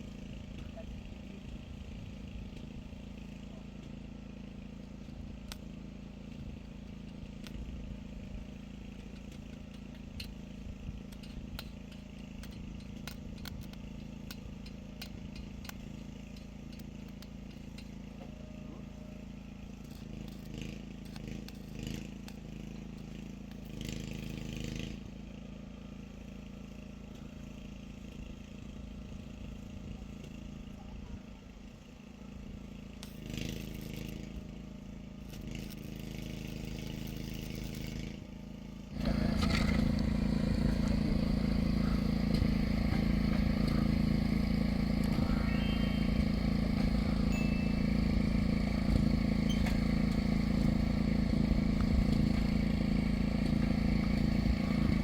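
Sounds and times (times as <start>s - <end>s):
engine humming: 35.2s - 55.0s.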